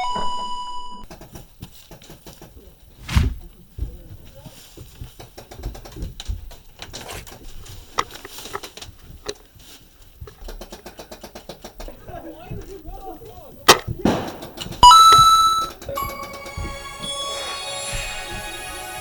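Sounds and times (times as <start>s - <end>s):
loud airsoft rifle shot: 13.7s - 15.6s
bright chime-like tone: 14.8s - 19.0s.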